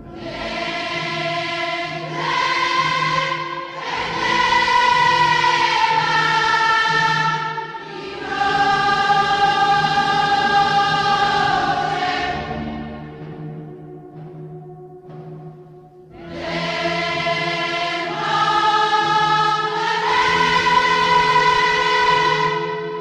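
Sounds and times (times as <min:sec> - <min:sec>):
choir singing held chords: 0:00.0 - 0:23.0.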